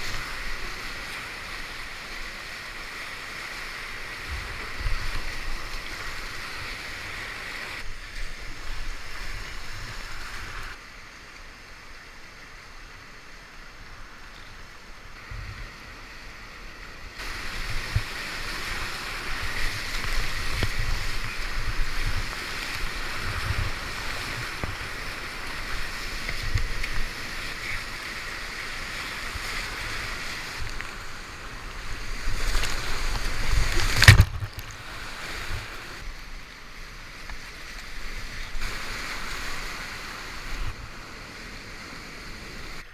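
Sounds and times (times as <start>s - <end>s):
wind buffeting microphone: 17.2s - 27.8s
whitewater rapids rushing: 17.2s - 36.2s.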